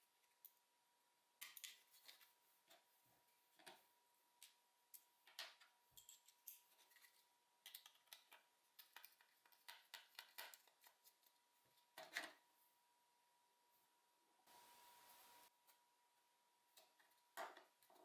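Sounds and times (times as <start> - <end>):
small clicks on plastic mouse parts: 7.7 - 11.0.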